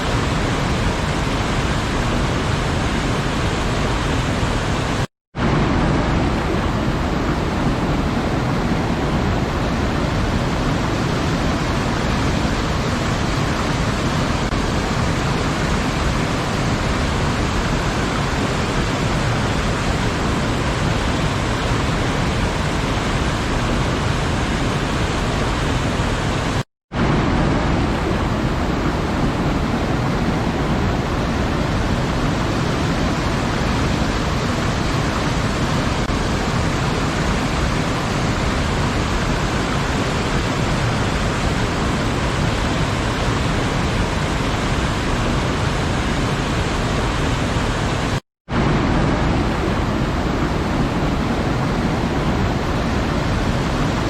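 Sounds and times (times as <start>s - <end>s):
waterfall rushing: 0.0s - 54.0s.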